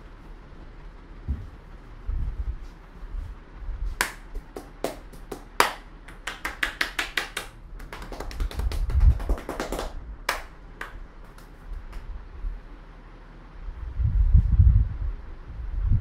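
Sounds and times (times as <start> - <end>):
hands slapping on a head: 3.9 - 12.1.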